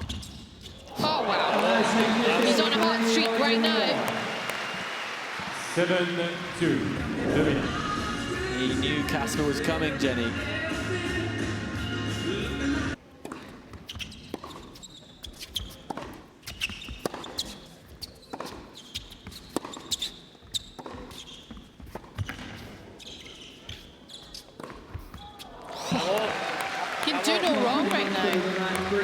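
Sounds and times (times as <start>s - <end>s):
tennis ball bouncing on court: 15.4s - 22.6s, 24.3s - 25.3s.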